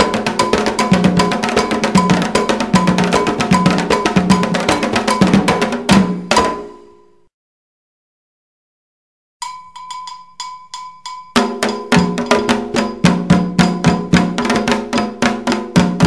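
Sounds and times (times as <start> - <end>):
metal bell struck rhythmically: 0.0 - 5.4, 9.4 - 15.2
hand drums beating: 0.0 - 6.8, 9.4 - 16.0.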